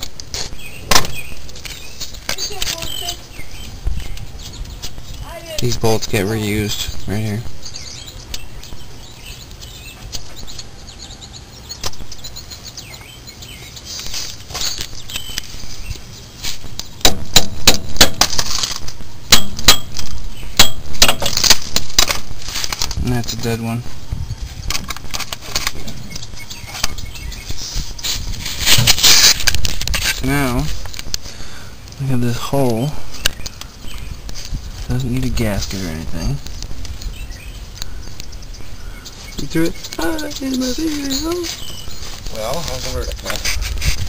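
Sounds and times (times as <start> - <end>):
birds chirping: 0.0 - 44.0.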